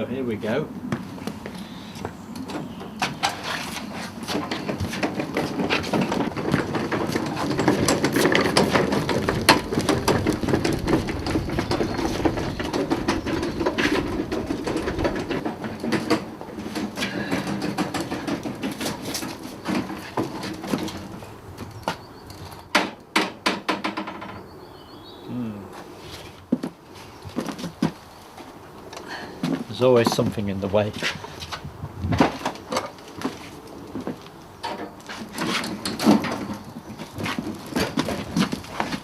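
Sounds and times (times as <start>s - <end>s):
knocks and clunks: 4.2s - 24.5s, 34.0s - 39.0s.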